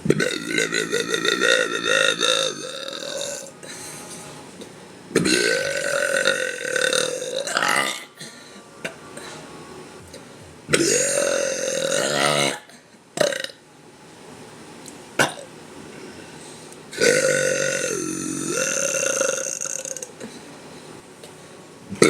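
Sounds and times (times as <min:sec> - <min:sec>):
woman burping: 0:00.1 - 0:03.5, 0:10.8 - 0:13.6, 0:17.0 - 0:20.2.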